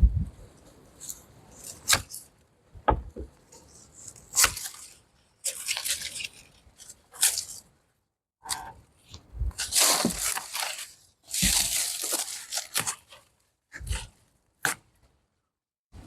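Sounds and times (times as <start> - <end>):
dry plants torn and crunched: 3.7 - 7.6, 9.5 - 13.2.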